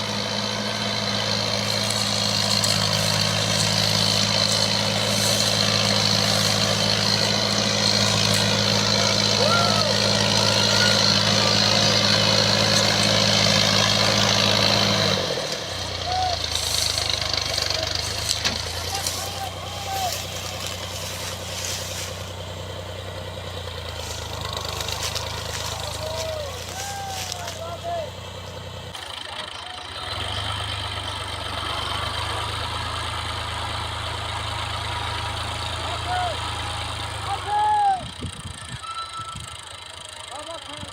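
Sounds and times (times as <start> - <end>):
wide mechanical noise: 0.0 - 30.6
combine harvester engine running: 0.0 - 40.9.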